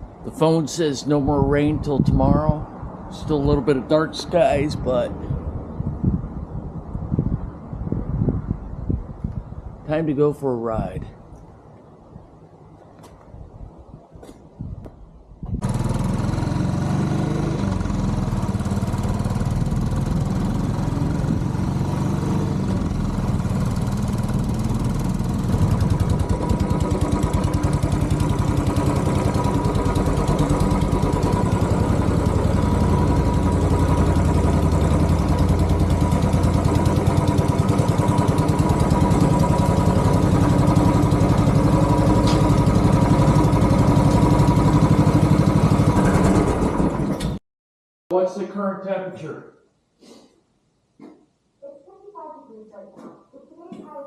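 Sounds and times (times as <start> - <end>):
motorcycle engine idling: 15.6 - 47.1.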